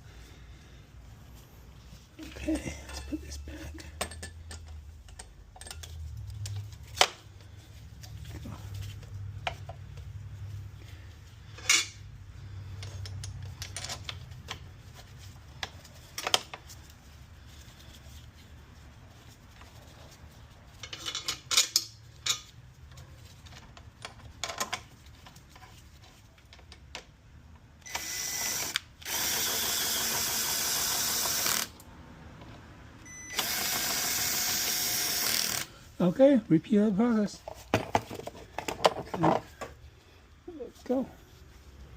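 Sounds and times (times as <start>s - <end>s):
metal tools clinking: 2.2s - 6.6s
power tool driving fasteners: 27.8s - 31.8s, 33.3s - 35.8s.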